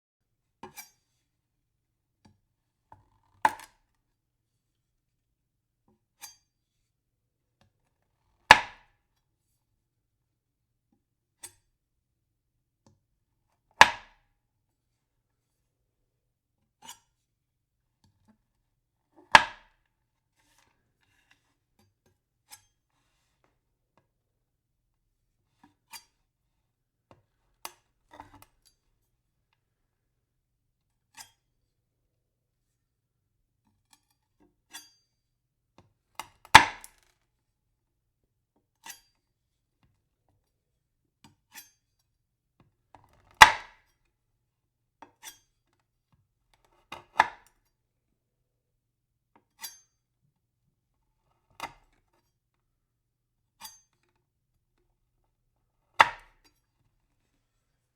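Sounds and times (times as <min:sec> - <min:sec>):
knife chopping on wooden board: 0:08.5 - 0:08.8, 0:13.8 - 0:14.1, 0:19.4 - 0:19.6, 0:36.6 - 0:36.9.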